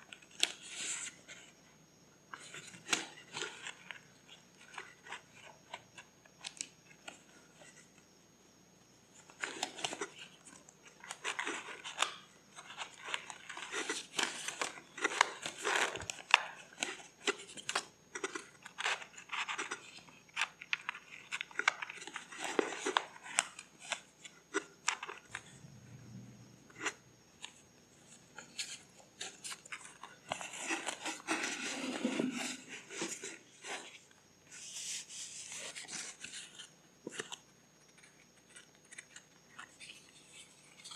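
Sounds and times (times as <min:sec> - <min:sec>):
paper crinkling and rustling: 0:09.2 - 0:25.4, 0:28.3 - 0:40.9.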